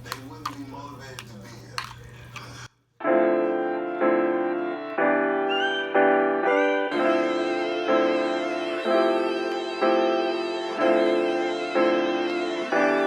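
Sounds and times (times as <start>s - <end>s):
background music sustained chords: 3.0s - 13.0s.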